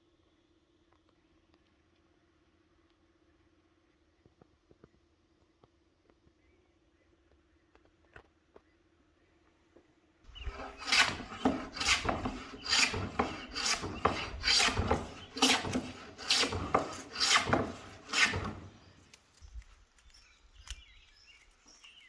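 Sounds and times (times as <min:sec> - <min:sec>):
hand tool scraping wood: 0:10.3 - 0:19.2.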